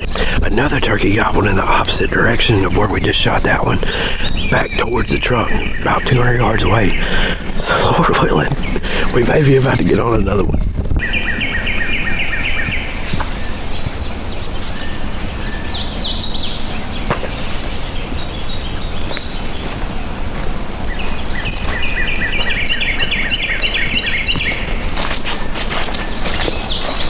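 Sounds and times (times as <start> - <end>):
bird down-slurred repeated notes: 0.0 - 27.0
low outdoor rumble: 0.0 - 27.0
songbirds singing: 0.0 - 27.0
thin whistled bird notes: 11.0 - 20.2, 20.8 - 27.0.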